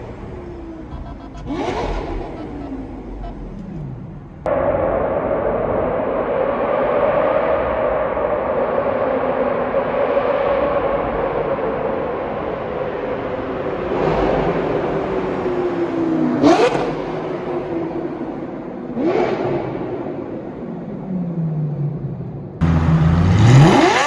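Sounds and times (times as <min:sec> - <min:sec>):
engine throttle blips: 0:00.0 - 0:06.3, 0:22.6 - 0:24.0
sports car engine: 0:00.0 - 0:24.0.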